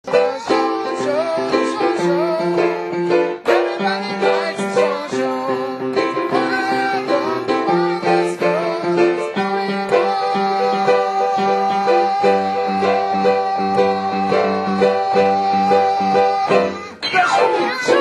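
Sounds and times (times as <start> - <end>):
upbeat plucked string music: 10.8 - 18.0.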